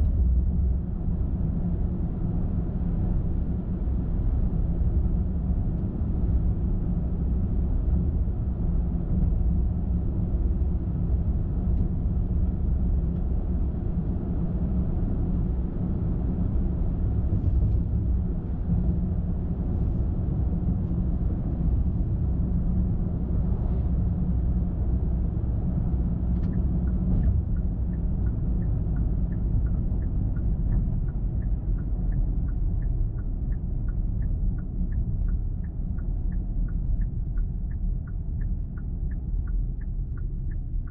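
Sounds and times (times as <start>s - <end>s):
tyres and engine rumble: 0.0s - 40.9s
turn-signal indicator ticking: 26.3s - 40.9s.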